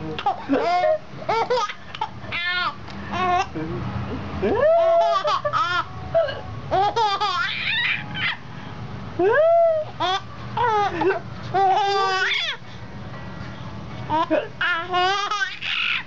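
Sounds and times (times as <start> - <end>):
baby laughing and squealing: 4.5 - 8.4, 9.7 - 12.6, 14.1 - 16.0.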